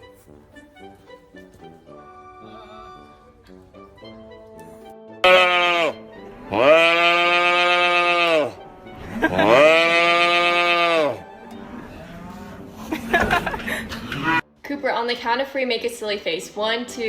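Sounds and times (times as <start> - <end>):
farm animal calling: 5.2 - 8.6, 9.3 - 11.2.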